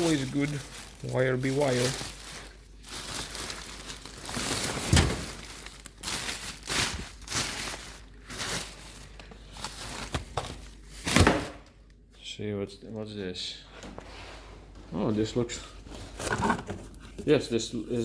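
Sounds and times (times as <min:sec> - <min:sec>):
bags and packaging rustling: 0:00.0 - 0:11.7.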